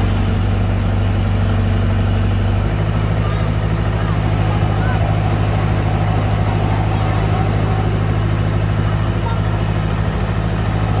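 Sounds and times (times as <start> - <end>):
excavator engine running: 0.0 - 11.0.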